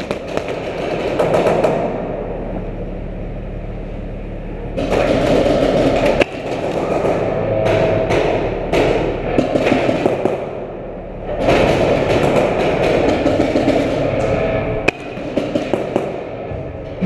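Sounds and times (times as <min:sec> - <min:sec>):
paintball markers firing: 0:00.0 - 0:01.9
paintballs hitting barriers: 0:00.0 - 0:02.0, 0:04.8 - 0:10.6, 0:11.3 - 0:16.7.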